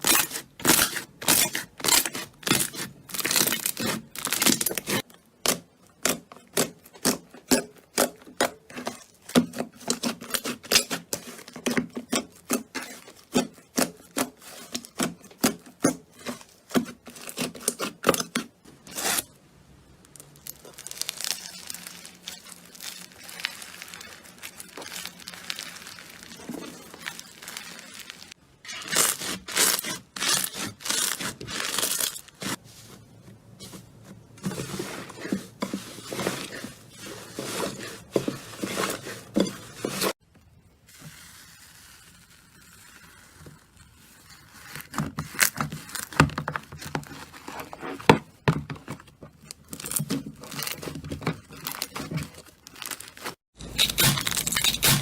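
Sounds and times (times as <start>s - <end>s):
slime rustling softly: 20.0s - 28.4s, 30.9s - 46.1s
slime crackling and popping: 20.0s - 32.2s, 51.6s - 55.0s.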